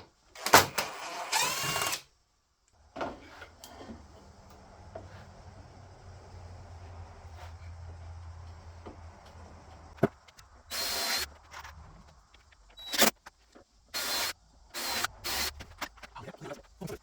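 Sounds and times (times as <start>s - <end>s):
power drill whining: 0.4s - 2.0s, 10.7s - 11.7s, 14.0s - 15.6s.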